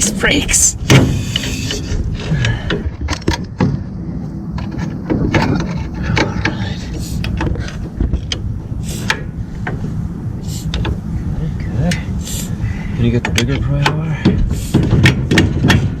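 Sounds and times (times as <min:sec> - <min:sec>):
metal tools clinking and scraping: 0:01.1 - 0:02.0.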